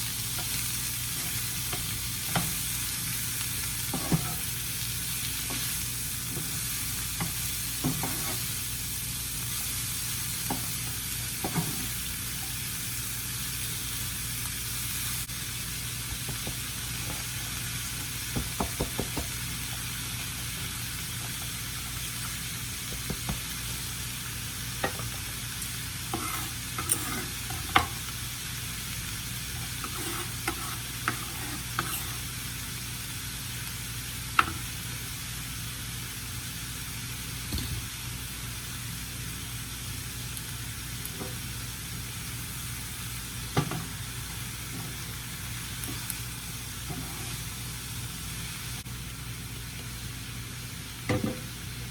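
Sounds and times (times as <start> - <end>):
food sizzling in frying pan: 0.0 - 51.9
utensil scraping pan: 3.9 - 4.5, 7.8 - 8.5, 26.1 - 28.0, 29.5 - 32.3, 46.8 - 47.5.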